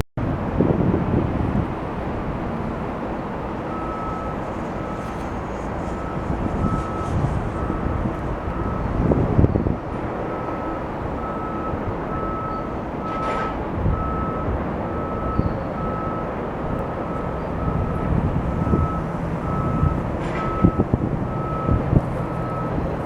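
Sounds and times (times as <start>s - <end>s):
wind: 0.0s - 23.0s
traffic rumble: 0.2s - 23.0s
reversing alarm beeping: 3.6s - 23.0s.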